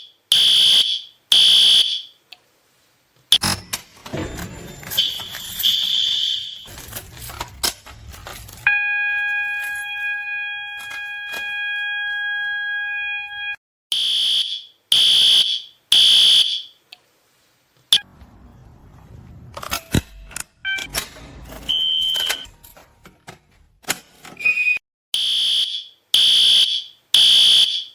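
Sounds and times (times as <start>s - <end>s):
fire alarm horn: 0.3s - 2.1s, 4.9s - 6.7s, 8.6s - 16.7s, 25.2s - 27.9s
brief high tone: 8.7s - 13.6s.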